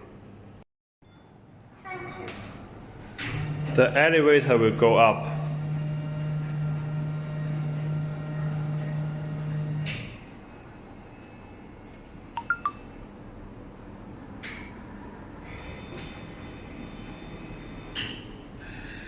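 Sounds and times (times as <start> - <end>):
vending machine motor humming: 3.2 - 10.3, 15.5 - 18.0.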